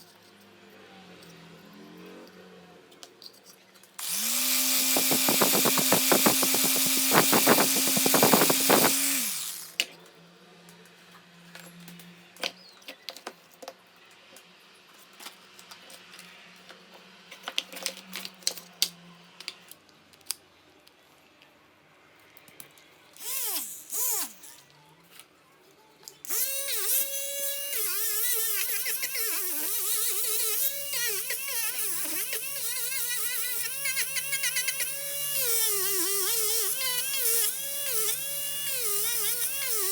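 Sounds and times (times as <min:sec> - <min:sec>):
power tool whining and scraping: 0:04.0 - 0:09.8, 0:23.2 - 0:24.6, 0:26.3 - 0:39.9.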